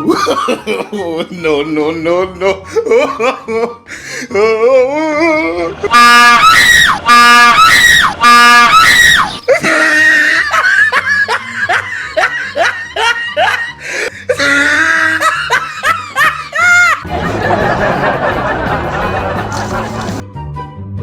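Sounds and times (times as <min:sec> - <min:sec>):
high-pitched laughter: 0:04.4 - 0:20.2
shrill screams: 0:05.7 - 0:10.6.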